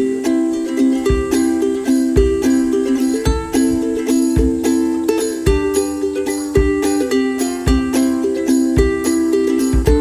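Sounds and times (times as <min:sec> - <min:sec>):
plucked-string tune: 0:00.0 - 0:10.0
kick-drum beat: 0:01.0 - 0:10.0.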